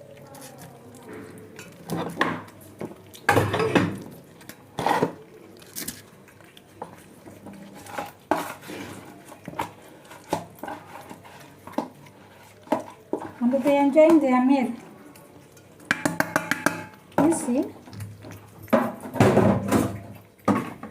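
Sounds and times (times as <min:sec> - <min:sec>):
food bowls clinking: 0:00.7 - 0:05.3, 0:15.6 - 0:20.9.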